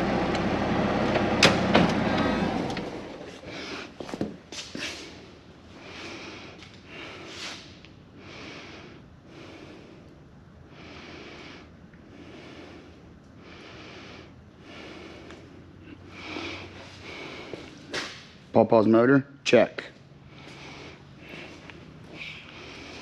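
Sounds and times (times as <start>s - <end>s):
man breathing hard: 3.3s - 4.2s, 4.8s - 18.2s, 20.2s - 23.0s.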